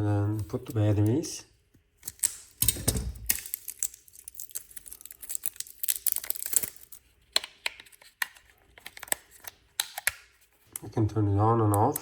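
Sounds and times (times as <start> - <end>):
plastic packaging crinkling: 2.0 - 10.4.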